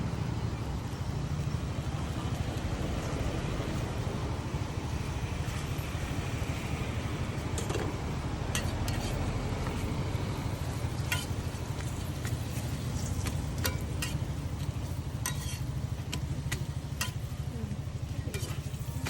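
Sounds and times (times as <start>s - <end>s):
steady low hum: 0.0s - 19.0s
metal spatula tapping pan: 11.0s - 11.4s, 13.6s - 17.3s.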